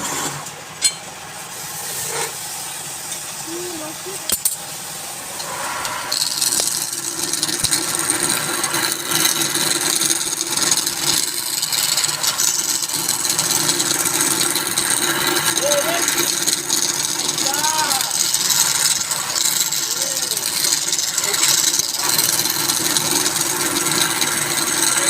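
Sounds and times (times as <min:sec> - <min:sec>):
lathe tool scraping wood: 0:00.0 - 0:00.4, 0:05.3 - 0:25.0
lathe humming: 0:05.1 - 0:25.0.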